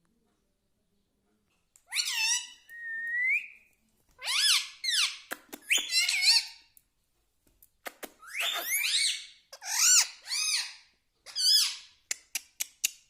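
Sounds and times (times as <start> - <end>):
parrot squawking and chattering: 1.9 - 2.7, 4.2 - 6.6, 8.1 - 12.0.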